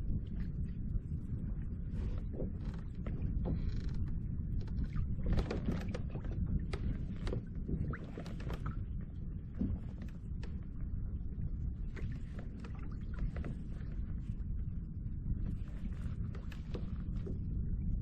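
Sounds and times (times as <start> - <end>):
low rumble: 0.0 - 18.0
kayak gear creaking and knocking: 2.0 - 10.7, 12.0 - 14.0, 15.4 - 17.6.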